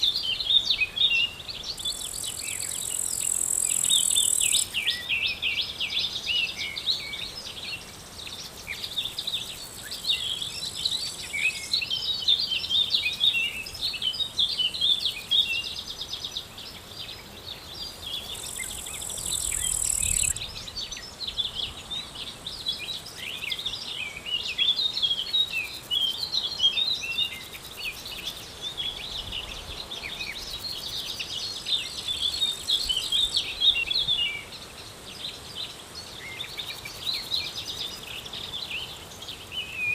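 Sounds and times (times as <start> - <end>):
small birds chirping: 0.0 - 39.9
insect buzzing: 1.6 - 4.9, 14.8 - 20.6.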